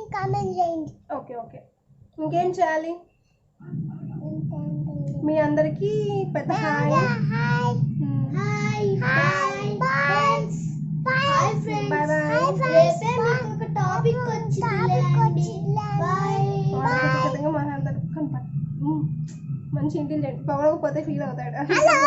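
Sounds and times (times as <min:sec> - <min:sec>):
steady low hum: 0:00.0 - 0:22.0
child singing: 0:06.3 - 0:17.4, 0:21.7 - 0:22.0.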